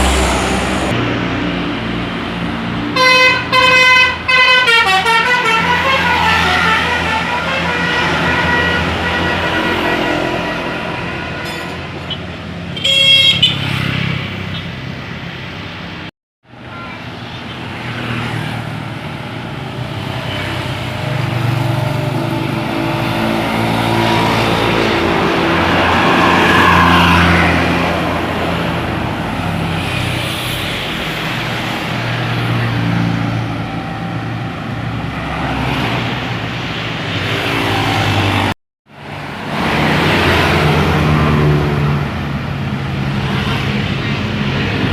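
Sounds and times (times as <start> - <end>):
diesel buses running: 0.0 - 44.9
traffic noise: 0.0 - 44.9
high-pitched horn toot: 3.0 - 12.2, 12.8 - 13.7.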